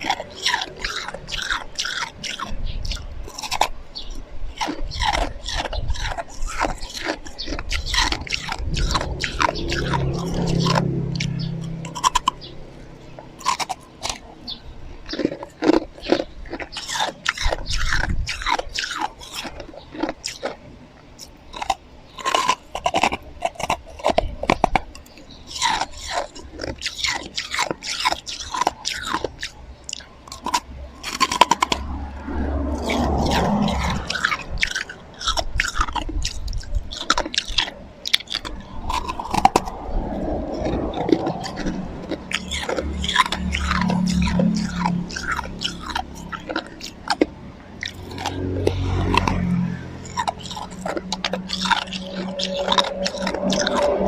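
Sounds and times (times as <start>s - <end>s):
chewing crunchy ice: 0.0s - 54.0s.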